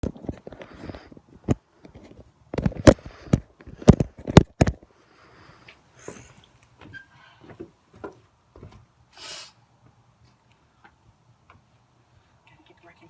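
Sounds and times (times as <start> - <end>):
sharp knocks and bumps: 2.6 - 4.8.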